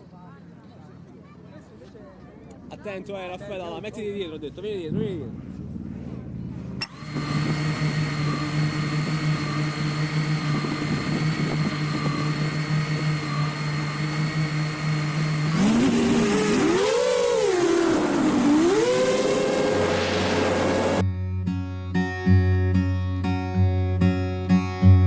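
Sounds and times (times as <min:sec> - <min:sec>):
drone motors whining: 0:06.8 - 0:21.0.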